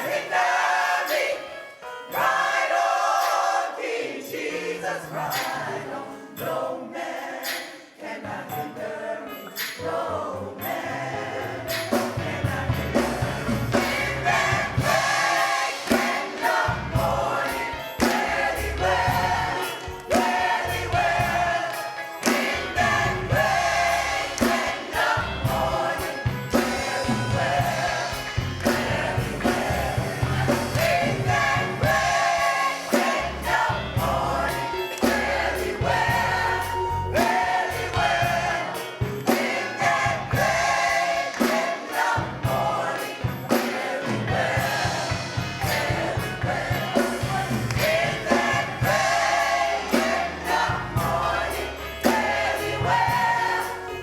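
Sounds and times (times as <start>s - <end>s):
gospel choir singing: 0.0s - 54.0s
band with bass and beat: 11.8s - 53.9s.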